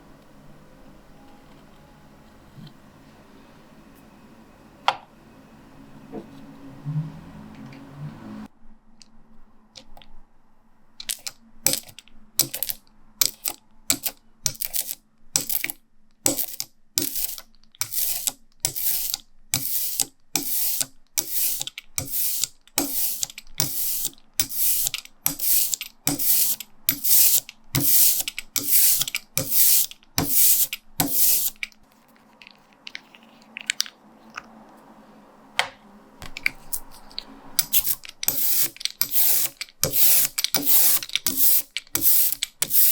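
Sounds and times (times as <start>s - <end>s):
small handling sounds: 11.0s - 34.9s, 36.2s - 42.9s
rubber brayer rolling through ink: 11.7s - 33.8s, 36.2s - 42.9s.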